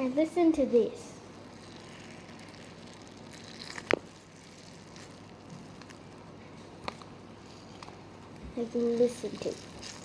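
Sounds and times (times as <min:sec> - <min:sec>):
foam beads crackling: 0:01.4 - 0:06.2, 0:08.6 - 0:10.0.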